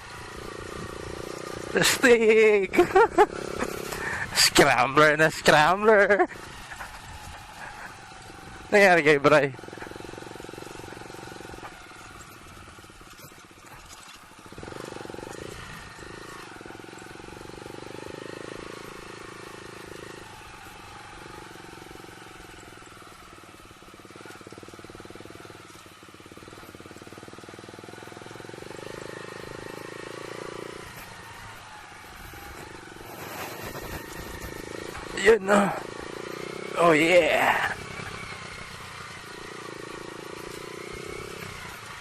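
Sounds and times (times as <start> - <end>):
motorcycle engine running: 0.0 - 42.0.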